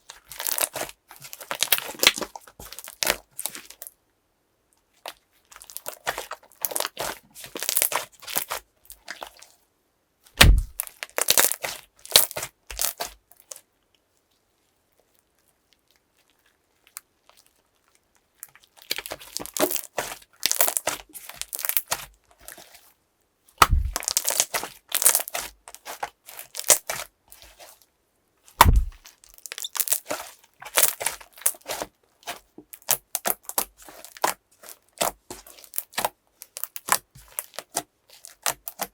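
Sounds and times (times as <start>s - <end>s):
slime crackling and popping: 0.4s - 3.2s, 10.4s - 13.1s, 18.9s - 22.0s, 23.6s - 27.0s, 28.6s - 38.9s
loud pops with low thud: 10.4s - 10.8s, 23.6s - 24.0s, 28.6s - 29.0s.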